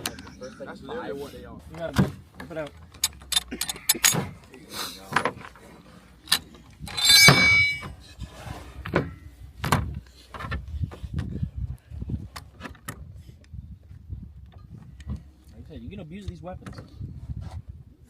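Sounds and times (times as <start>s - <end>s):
sharp metal clicks and knocks: 2.4s - 4.2s, 6.3s - 7.9s
ringing metal clank: 6.9s - 8.0s.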